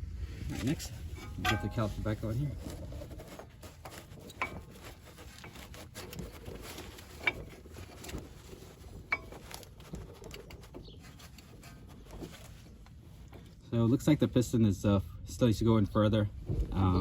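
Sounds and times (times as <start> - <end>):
metal clinking and scraping: 0.6 - 13.5.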